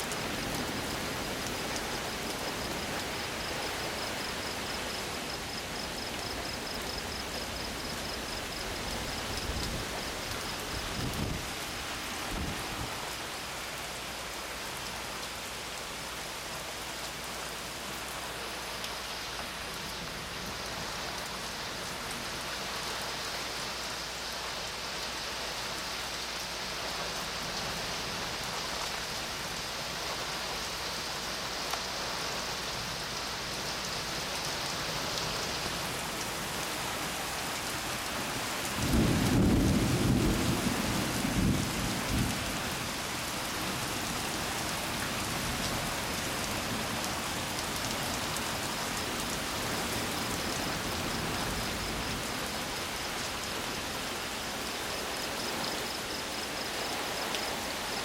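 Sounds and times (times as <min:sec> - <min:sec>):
steady rain falling: 0:00.0 - 0:58.0
rumble of thunder: 0:38.7 - 0:42.8.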